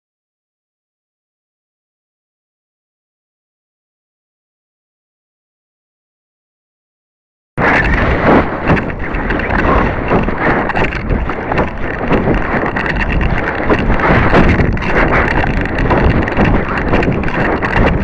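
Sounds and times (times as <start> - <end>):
wind buffeting microphone: 7.6 - 18.0.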